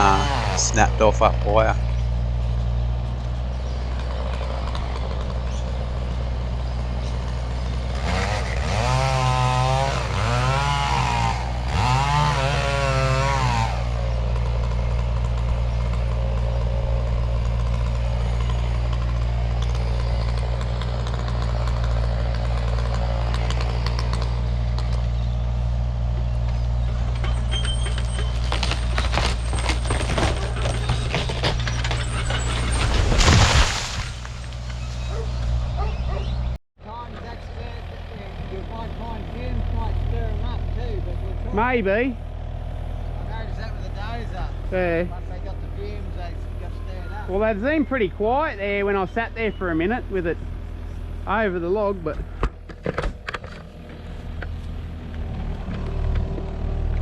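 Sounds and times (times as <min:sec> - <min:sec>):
excavator diesel engine running: 0:00.0 - 0:33.3, 0:34.2 - 0:57.0
knocks and clatter: 0:26.4 - 0:35.6, 0:52.2 - 0:57.0.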